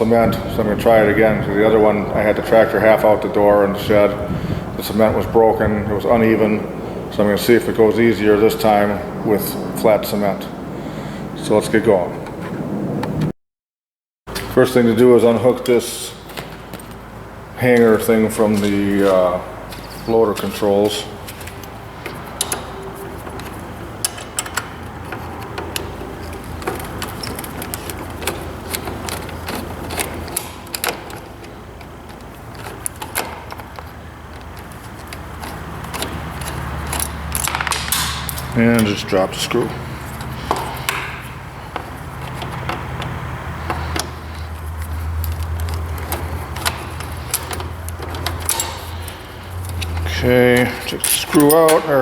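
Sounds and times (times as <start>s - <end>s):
steady low hum: 0.0s - 13.2s, 14.5s - 52.0s
metallic clicks and rattles: 17.9s - 52.0s.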